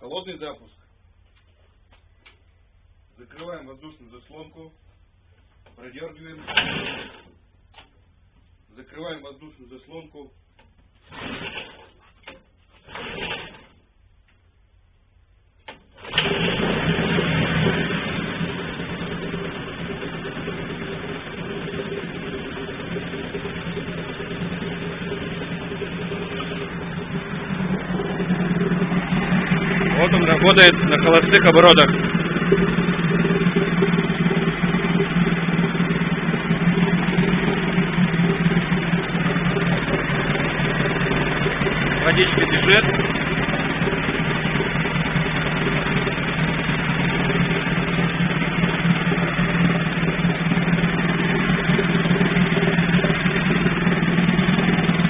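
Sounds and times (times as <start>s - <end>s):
outboard motor running: 6.4s - 7.3s, 11.1s - 13.8s, 15.7s - 55.0s.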